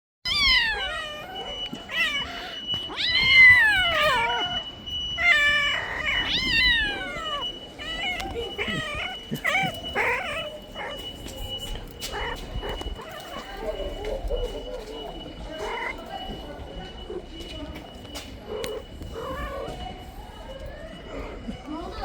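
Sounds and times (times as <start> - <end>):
cat meowing: 0.3 - 11.3, 11.9 - 14.0, 15.6 - 16.0.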